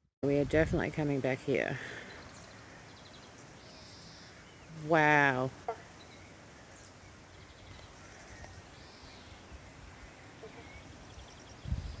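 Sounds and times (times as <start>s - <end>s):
outdoor background hush: 0.2s - 12.0s
faint bird chirps: 5.7s - 12.0s.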